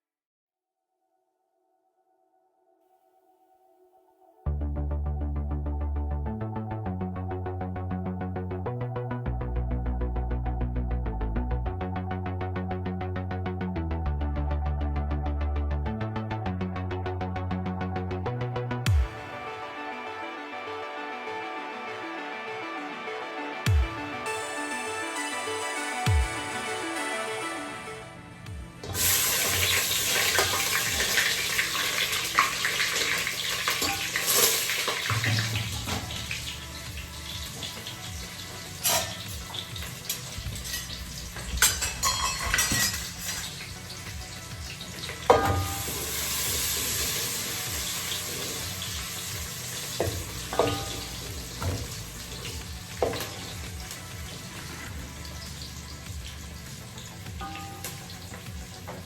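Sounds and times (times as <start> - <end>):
pots and utensils clinking: 28.8 - 36.6, 38.7 - 43.8, 45.0 - 46.4, 50.0 - 53.6, 57.4 - 59.0
steady hiss of frying or water: 28.9 - 59.0.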